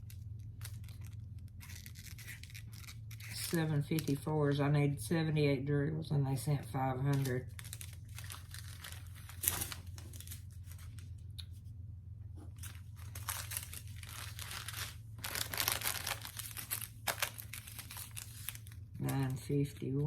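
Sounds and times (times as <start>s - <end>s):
plastic bags crinkling: 0.0s - 4.3s, 7.1s - 11.6s, 12.5s - 19.5s.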